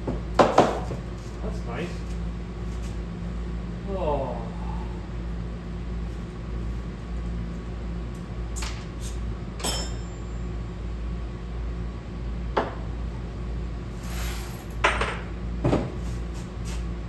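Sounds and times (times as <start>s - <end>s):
steady low hum: 0.0s - 17.0s
metal tools clicking and clinking: 9.6s - 10.2s.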